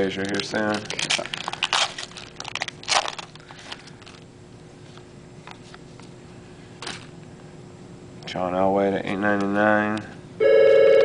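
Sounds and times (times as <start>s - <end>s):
card wrappers crinkling: 0.0s - 4.3s.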